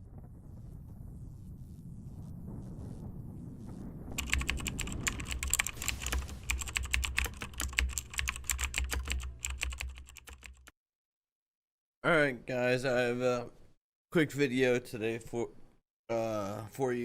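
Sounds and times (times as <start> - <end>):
fast typing on mechanical keyboard: 4.2 - 10.7.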